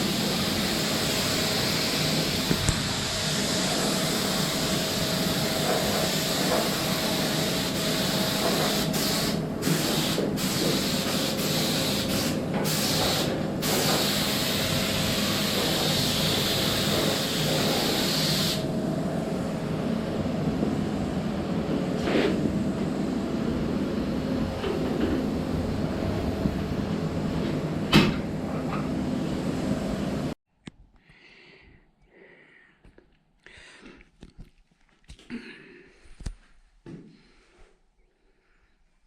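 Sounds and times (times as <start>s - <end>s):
spray gun hissing: 0.0s - 18.7s.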